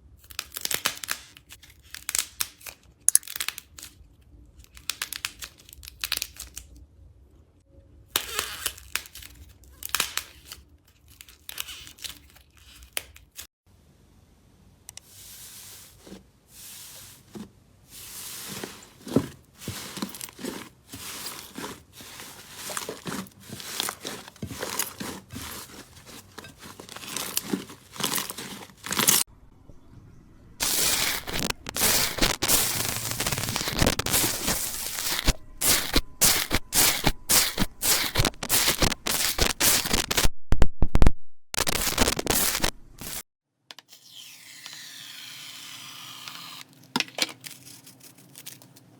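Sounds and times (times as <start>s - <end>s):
slime crackling and popping: 30.6s - 40.3s, 41.6s - 43.2s.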